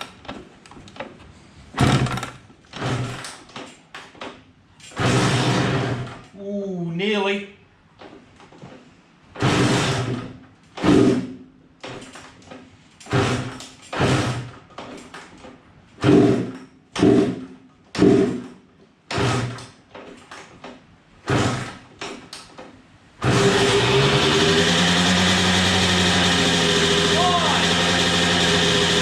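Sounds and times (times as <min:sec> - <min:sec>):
two-stroke engine running: 0:23.2 - 0:29.0.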